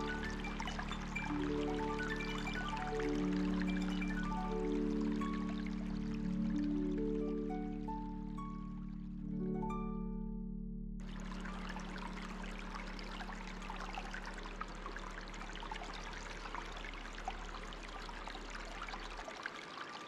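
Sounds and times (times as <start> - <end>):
water trickling: 0.0 - 9.1, 11.0 - 20.0
low steady drone: 10.9 - 19.2.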